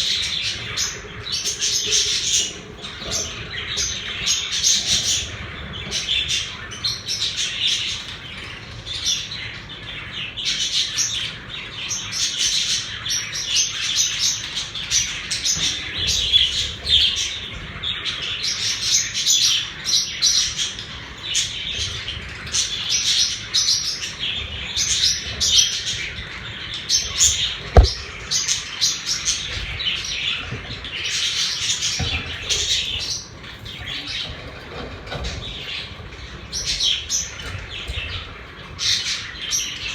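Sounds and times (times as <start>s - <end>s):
budgerigars chattering and chirping: 0.0s - 39.9s
sharp knock: 27.8s - 28.2s.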